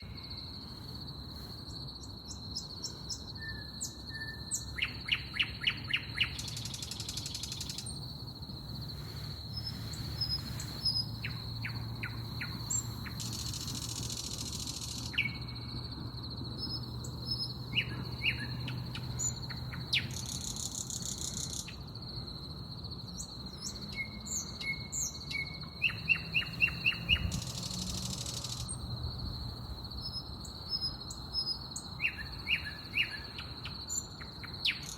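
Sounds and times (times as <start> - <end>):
steady high-pitched whine: 0.0 - 29.8
songbirds chirping: 0.0 - 34.9.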